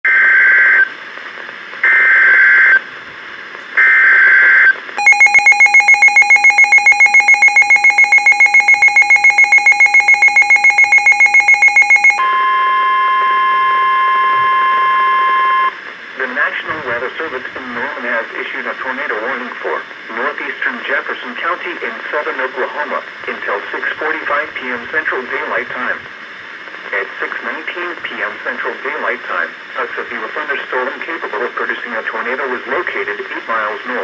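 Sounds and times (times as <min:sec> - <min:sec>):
rapid alert beeps: 0:05.0 - 0:12.2
steady warning alarm tone: 0:05.0 - 0:15.7.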